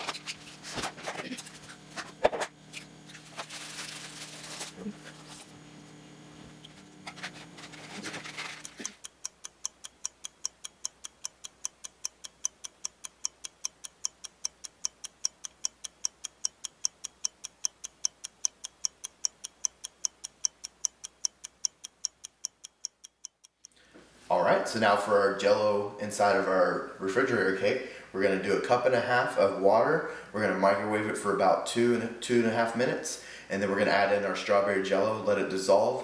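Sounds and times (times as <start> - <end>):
clock-like ticking: 8.6 - 23.7.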